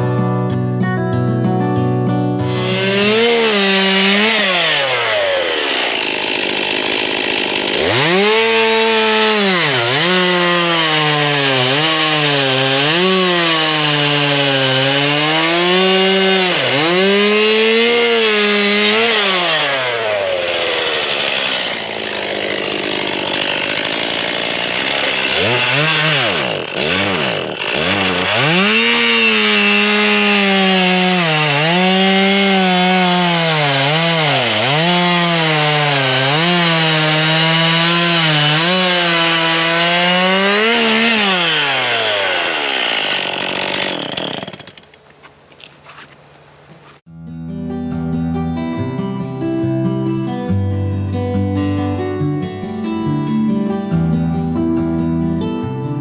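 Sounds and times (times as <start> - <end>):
chainsaw cutting logs: 2.4 - 46.2.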